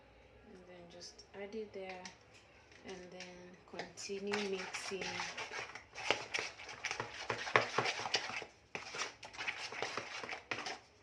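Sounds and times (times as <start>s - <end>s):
wooden spoon scraping a bowl: 2.4s - 11.0s.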